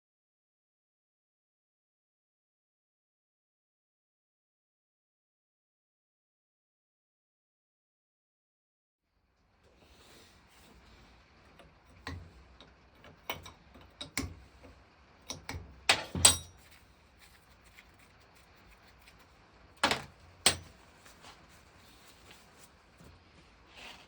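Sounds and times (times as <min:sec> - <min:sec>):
clicks and knocks of hard objects: 0:11.5 - 0:21.3.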